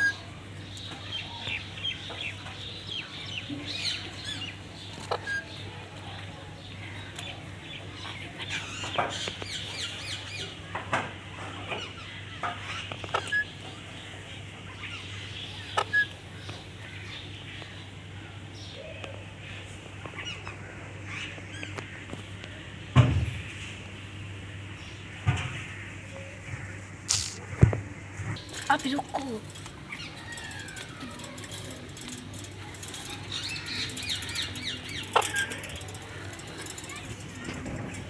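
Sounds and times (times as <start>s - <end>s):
sharp clicks: 27.1s - 27.4s.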